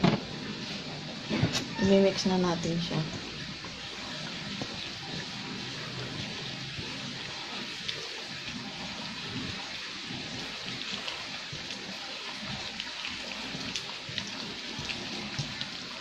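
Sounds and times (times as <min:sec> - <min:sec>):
wet sloshing of mixing chicken: 0:03.3 - 0:16.0.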